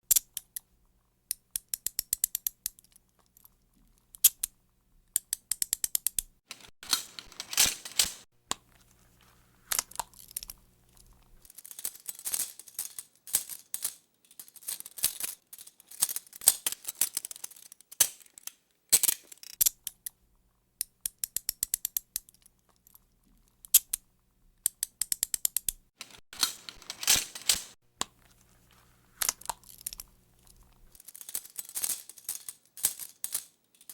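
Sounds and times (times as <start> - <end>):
handcuff ratchet clicks: 0.0 - 0.7, 1.3 - 8.6, 18.9 - 20.2, 20.8 - 28.3, 29.0 - 31.0
metal handcuffs jangling: 5.2 - 8.2, 9.7 - 20.0, 24.7 - 27.8, 29.2 - 33.9.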